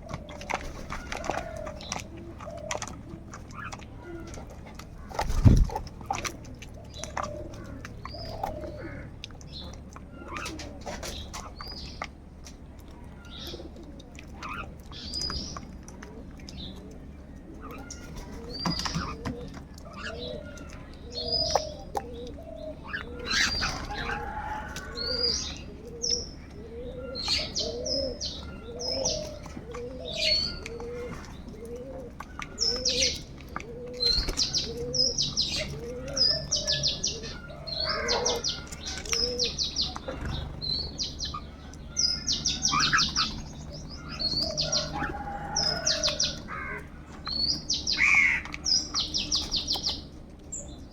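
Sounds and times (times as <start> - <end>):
harsh bird calls: 16.4 - 50.9.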